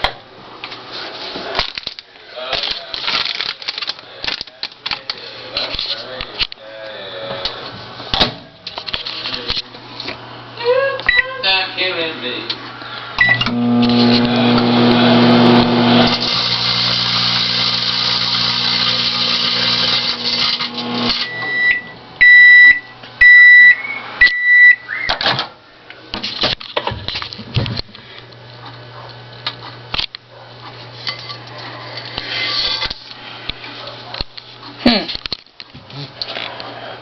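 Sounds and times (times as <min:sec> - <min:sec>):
chip bag crackling: 0:01.6 - 0:04.8
microwave oven humming: 0:09.3 - 0:37.0
microwave beeps: 0:11.0 - 0:11.4, 0:13.2 - 0:14.1, 0:20.8 - 0:25.2.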